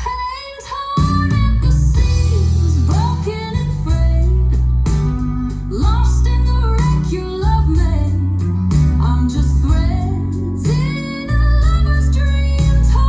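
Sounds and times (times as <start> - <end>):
pop song with singing and guitar: 0.0 - 13.0.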